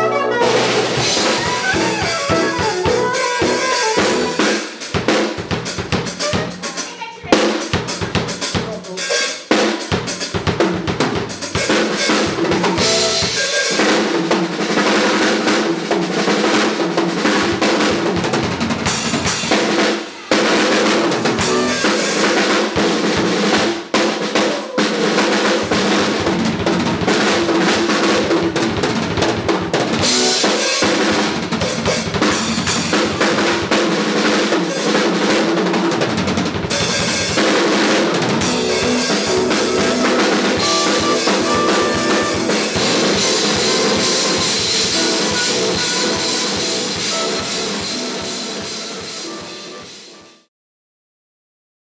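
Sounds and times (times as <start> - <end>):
steady pitched instrument: 0.0 - 4.8, 11.4 - 14.1, 21.1 - 23.6, 38.4 - 50.4
drum kit groove: 0.0 - 50.4.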